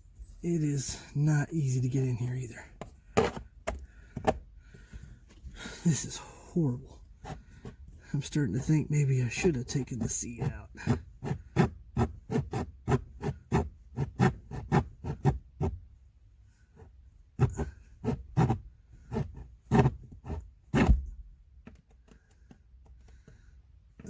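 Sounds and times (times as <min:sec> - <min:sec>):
hacksaw cutting hard plastic: 0:10.7 - 0:15.8, 0:17.4 - 0:21.0.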